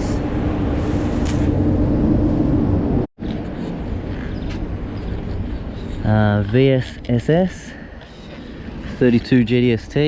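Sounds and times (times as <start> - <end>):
mechanical hum and rumble: 0.0 - 7.2.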